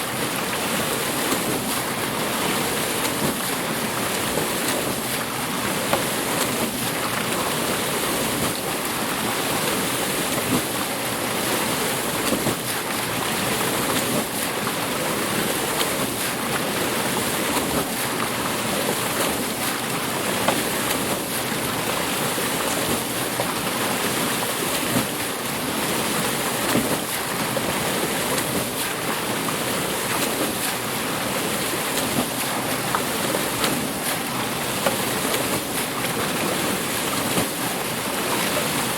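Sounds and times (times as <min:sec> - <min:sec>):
water rushing at mill wheel: 0:00.0 - 0:38.9.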